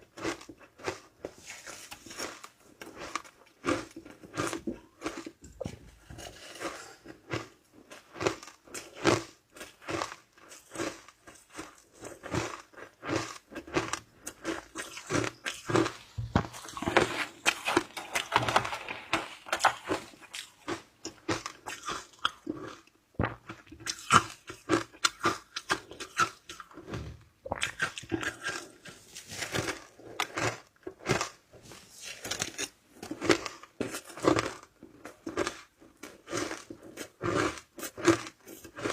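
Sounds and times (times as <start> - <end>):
person crunching ice: 0.1 - 38.9.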